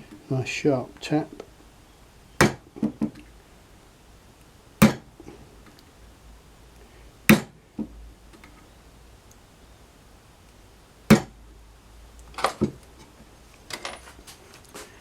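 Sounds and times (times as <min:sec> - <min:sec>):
hammer strikes on leather punch: 0:02.4 - 0:02.6, 0:04.8 - 0:05.1, 0:07.3 - 0:07.6, 0:11.1 - 0:11.4.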